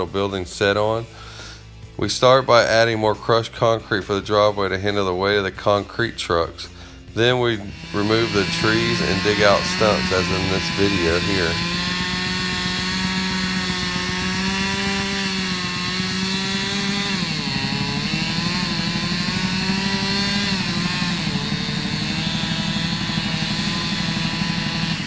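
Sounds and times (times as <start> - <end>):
chainsaw cutting at high revs: 7.5 - 25.0.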